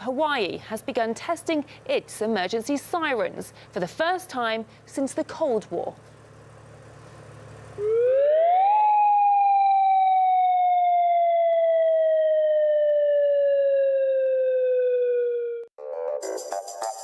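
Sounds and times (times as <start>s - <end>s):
warning siren winding up: 7.8s - 15.7s.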